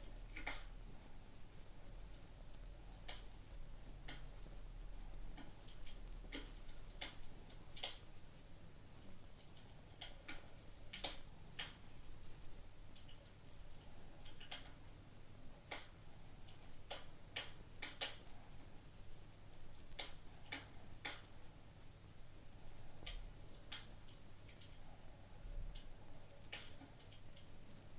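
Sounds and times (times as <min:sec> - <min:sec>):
wood fire crackling: 0:00.0 - 0:27.9.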